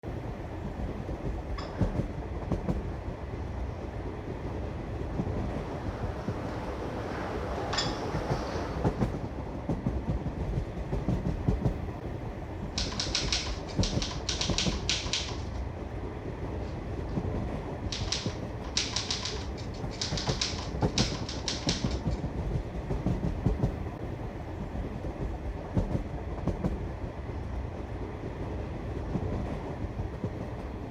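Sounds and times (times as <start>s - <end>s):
train carriage rumble: 0.0s - 30.9s
typewriter typing: 12.8s - 15.6s, 17.9s - 22.2s.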